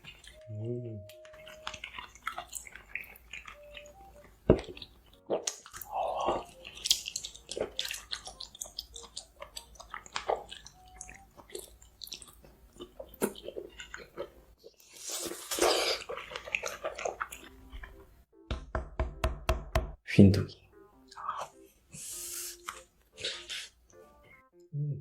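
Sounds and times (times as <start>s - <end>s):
person chewing with sharp clicks: 1.1s - 14.3s.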